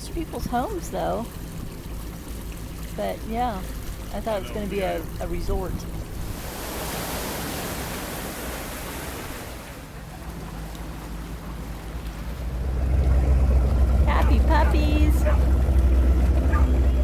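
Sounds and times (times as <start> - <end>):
boat engine hum: 0.0 - 17.0
water rushing: 0.0 - 17.0
wind: 0.0 - 17.0.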